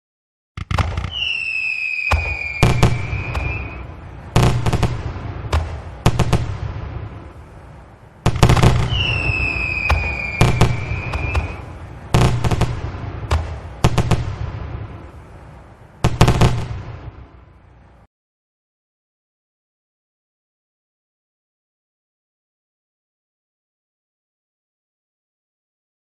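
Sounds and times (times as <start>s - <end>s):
fireworks bangs and crackling: 0.6s - 17.4s
whistling rocket: 0.7s - 6.5s, 8.3s - 12.9s.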